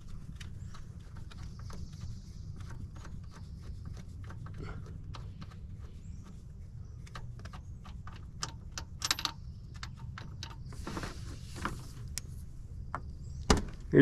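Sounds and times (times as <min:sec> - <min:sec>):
short rustle: 0:10.7 - 0:12.3.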